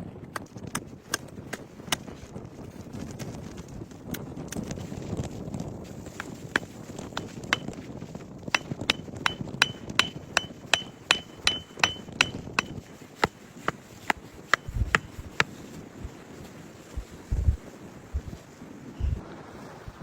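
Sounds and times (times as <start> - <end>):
hammer blows with metallic ring: 8.6 - 15.4.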